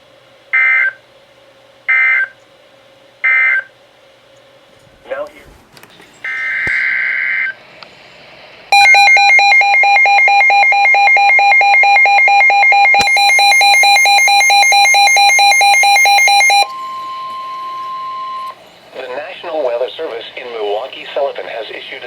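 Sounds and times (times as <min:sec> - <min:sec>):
rapidly pulsing electronic alarm: 0:00.5 - 0:01.0, 0:01.9 - 0:02.4, 0:03.2 - 0:03.7, 0:08.7 - 0:19.7
steady warning alarm tone: 0:00.5 - 0:01.0, 0:01.9 - 0:02.4, 0:03.2 - 0:03.7, 0:08.7 - 0:22.0.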